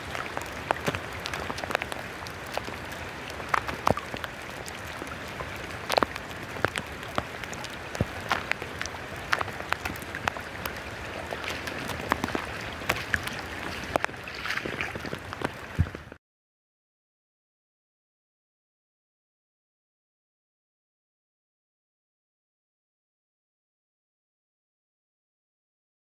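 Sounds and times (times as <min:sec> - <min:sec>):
heavy rain: 0:00.0 - 0:16.2.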